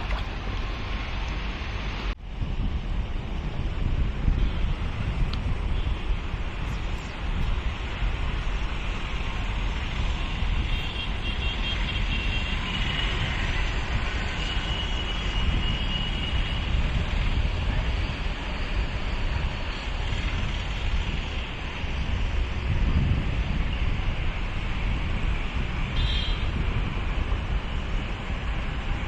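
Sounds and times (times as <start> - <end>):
wind buffeting microphone: 0.0 - 29.0.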